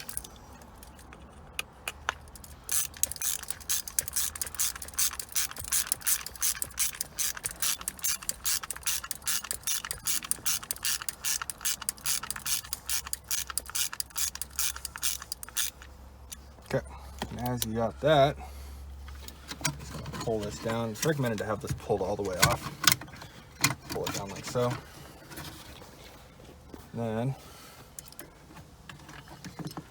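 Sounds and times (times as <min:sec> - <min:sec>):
ratchet wrench clicking: 0:02.2 - 0:16.4.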